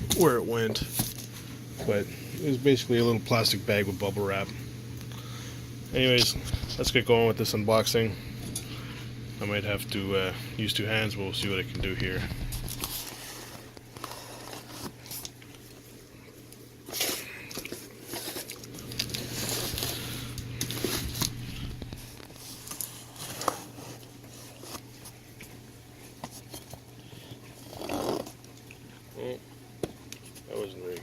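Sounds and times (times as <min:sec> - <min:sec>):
cardboard box rustling and tearing: 0:16.9 - 0:20.1.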